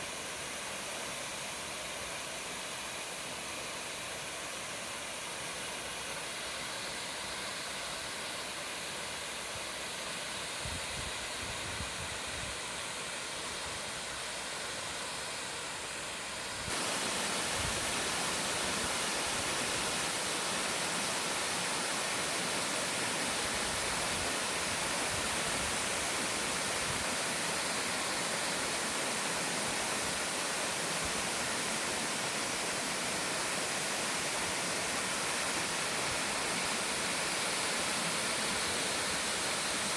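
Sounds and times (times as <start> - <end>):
waterfall roaring: 16.7 - 39.9.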